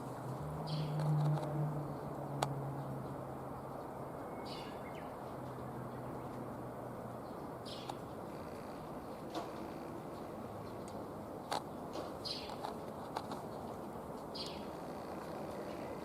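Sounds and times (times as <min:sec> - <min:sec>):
outdoor background noise: 0:00.0 - 0:16.0
songbirds calling: 0:00.5 - 0:16.0.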